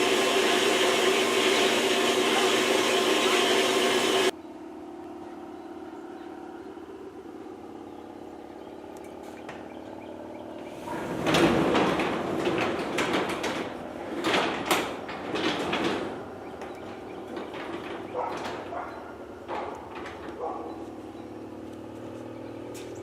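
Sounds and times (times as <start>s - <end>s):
vehicle engine idling: 4.3s - 10.7s, 20.3s - 23.0s
metal scraping and clattering: 10.8s - 18.8s.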